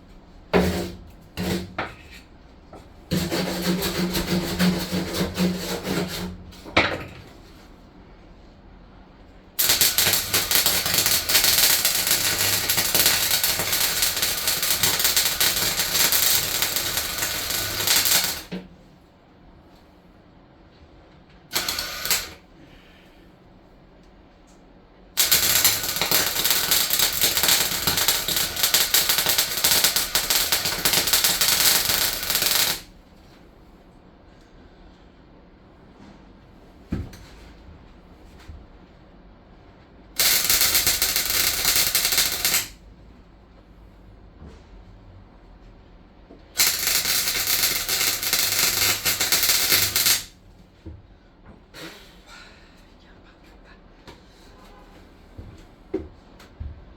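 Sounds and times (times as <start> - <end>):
welding arc crackling: 9.6 - 18.5, 21.5 - 22.4, 25.2 - 32.9, 40.2 - 42.8, 46.6 - 50.4.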